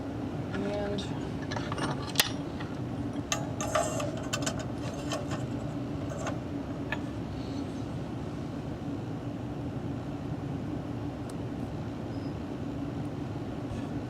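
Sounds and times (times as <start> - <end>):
low mechanical hum: 0.0 - 14.0
clicks and clinks of tools: 1.4 - 7.1.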